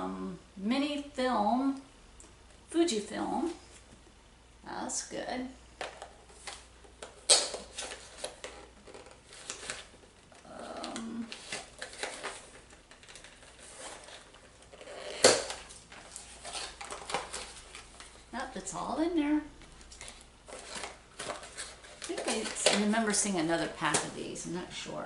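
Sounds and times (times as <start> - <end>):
packaging rustling and clicking: 5.8 - 18.3, 19.6 - 24.2.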